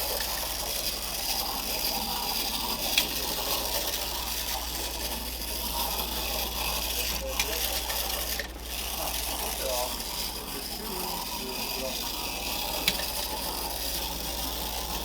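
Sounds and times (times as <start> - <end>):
clockwork motor whirring: 0.0 - 15.0.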